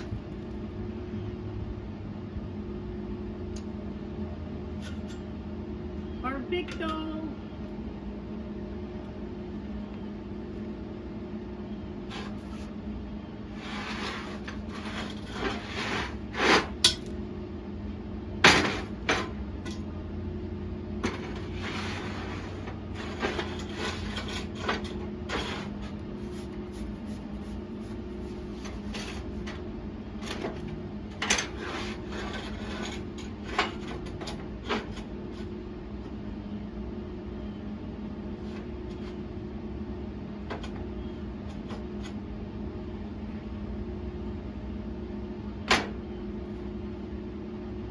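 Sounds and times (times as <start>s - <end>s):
steady low hum: 0.0s - 47.9s.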